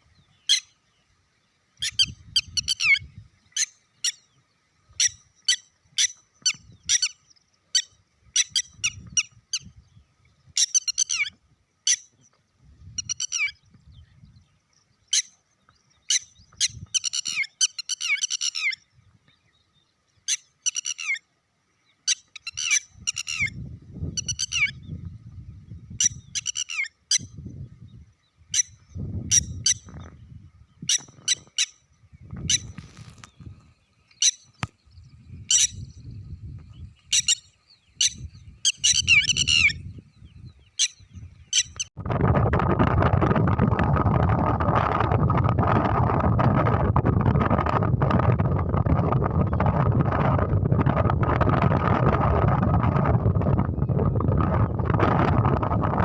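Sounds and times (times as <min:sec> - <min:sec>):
low rumbling noise: 0:42.0 - 0:56.0.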